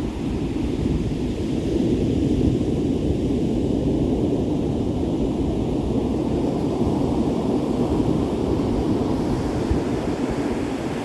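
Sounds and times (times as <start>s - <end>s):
waves breaking on beach: 5.8s - 11.0s.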